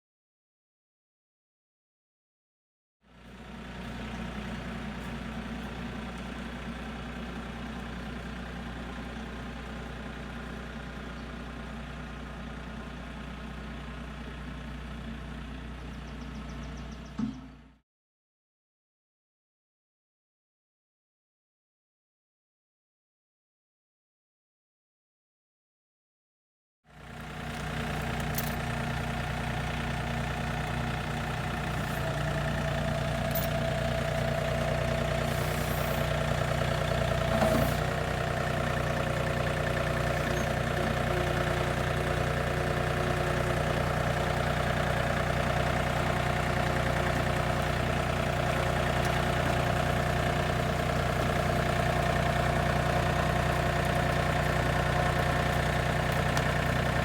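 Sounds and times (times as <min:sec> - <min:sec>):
engine running steadily: 0:03.1 - 0:17.8, 0:26.9 - 0:57.0.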